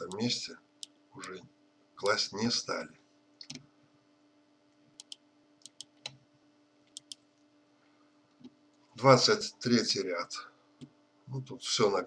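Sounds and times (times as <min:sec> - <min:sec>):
faint steady hum: 0:00.0 - 0:12.0
computer mouse clicks: 0:03.4 - 0:03.6, 0:05.0 - 0:06.2, 0:06.9 - 0:07.2.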